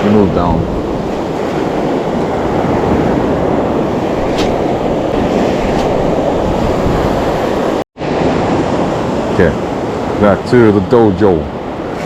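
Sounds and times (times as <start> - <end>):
ocean surf washing: 0.0 - 12.0
wind buffeting microphone: 0.0 - 12.0.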